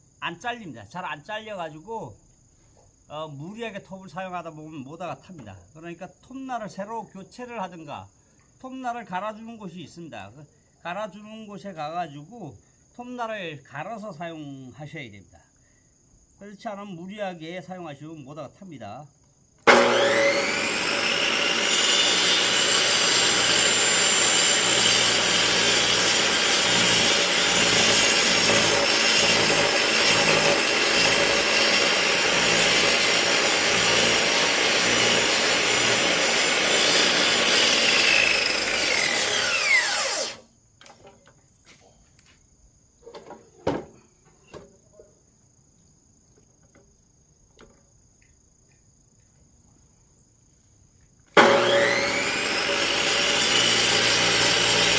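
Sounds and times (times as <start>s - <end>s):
electric saw cutting log: 19.6s - 40.4s, 51.4s - 54.9s.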